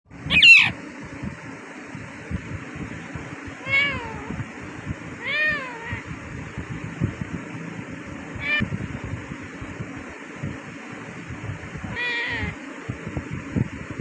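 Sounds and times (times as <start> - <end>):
parrot screeching and calling: 0.3 - 0.8, 3.6 - 4.2, 5.2 - 6.0, 8.4 - 8.6, 11.9 - 12.5.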